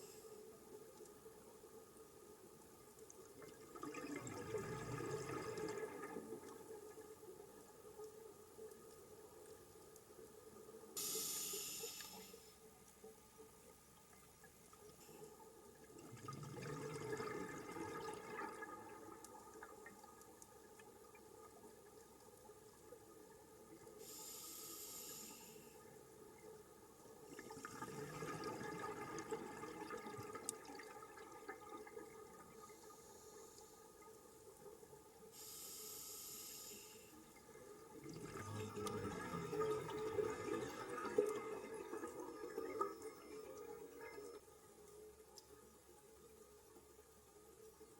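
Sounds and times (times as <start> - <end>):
bubbles gurgling underwater: 3.4 - 6.7, 15.9 - 19.9, 27.3 - 32.6, 37.9 - 44.0
regulator breath hiss: 11.0 - 12.5, 24.0 - 25.8, 35.4 - 37.1.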